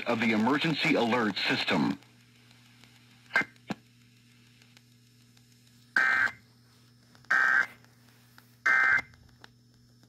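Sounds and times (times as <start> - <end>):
digital data tone bursts: 6.0 - 6.4.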